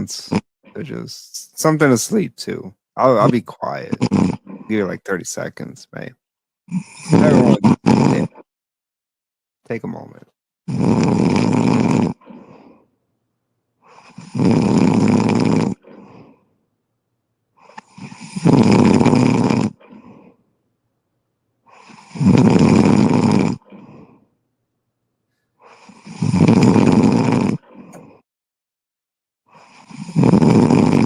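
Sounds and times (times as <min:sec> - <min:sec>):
loud rhythmic snoring: 0:00.0 - 0:02.0, 0:03.0 - 0:05.1, 0:06.7 - 0:08.5, 0:10.6 - 0:13.0, 0:13.8 - 0:16.6, 0:17.6 - 0:20.4, 0:21.6 - 0:24.3, 0:25.6 - 0:28.3, 0:29.4 - 0:31.0.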